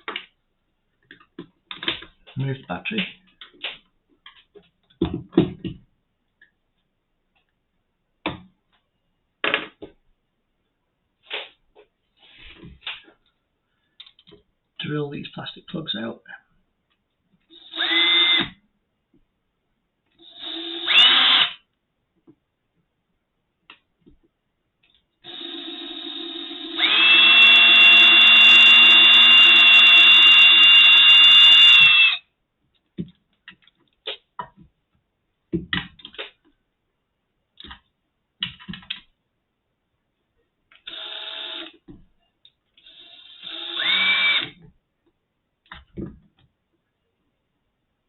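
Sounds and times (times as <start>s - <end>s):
electric drill whining: 17.6s - 18.6s, 20.2s - 21.6s, 25.3s - 32.3s, 40.8s - 41.8s, 42.8s - 44.6s.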